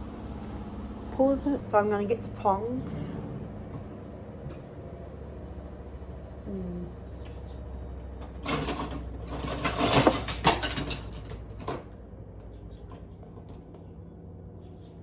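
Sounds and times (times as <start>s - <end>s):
steady low hum: 0.0s - 9.7s
utensils rattling and clinking: 8.2s - 11.9s.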